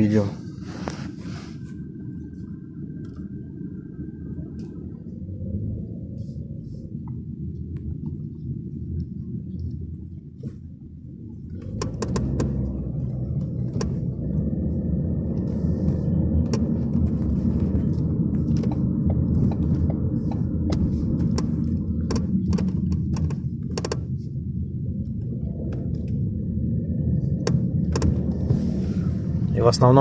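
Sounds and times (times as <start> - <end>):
car cabin road noise: 0.0 - 30.0
car body creaks and clicks: 11.4 - 14.5, 15.2 - 24.2, 25.0 - 26.3, 27.3 - 28.7.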